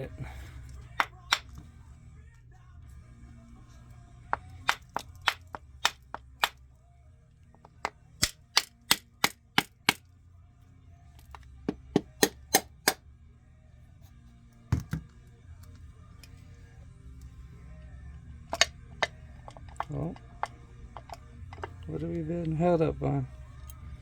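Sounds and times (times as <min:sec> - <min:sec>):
hammer tapping plastic housing: 0:00.9 - 0:01.6, 0:04.4 - 0:06.6, 0:07.6 - 0:10.0, 0:11.2 - 0:13.0, 0:18.5 - 0:22.2.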